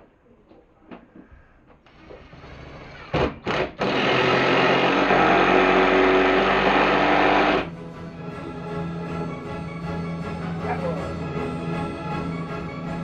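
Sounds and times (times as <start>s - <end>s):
power drill driving screw: 1.9s - 7.7s.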